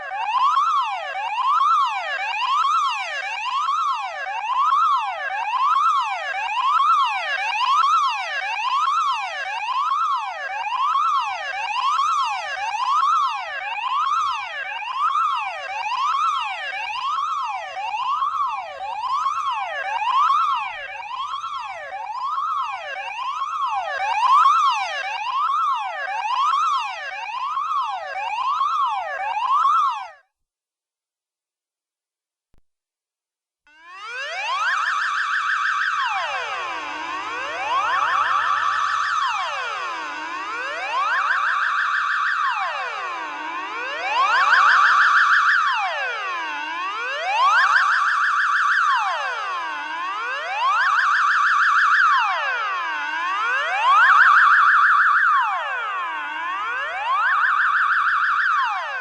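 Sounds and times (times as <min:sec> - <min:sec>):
electronic alarm wailing: 0:33.8 - 0:59.0.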